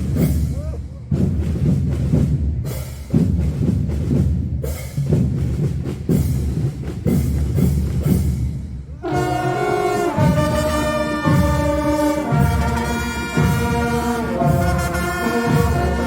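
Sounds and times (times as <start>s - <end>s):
marching drums beating: 0.0s - 16.0s
brass held chord: 9.0s - 16.0s.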